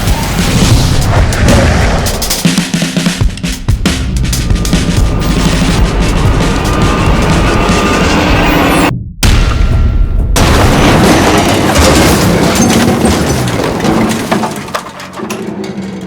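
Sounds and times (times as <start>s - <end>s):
film music: 0.0s - 12.3s
loud boom: 4.5s - 13.8s.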